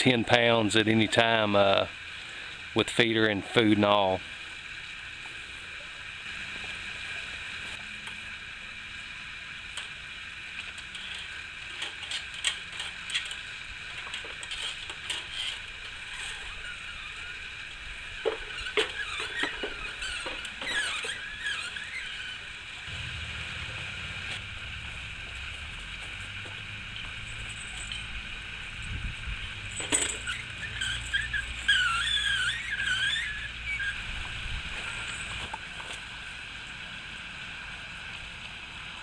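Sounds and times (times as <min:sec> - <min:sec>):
short squeaks: 0:14.5 - 0:35.6
high-pitched background drone: 0:22.9 - 0:35.4.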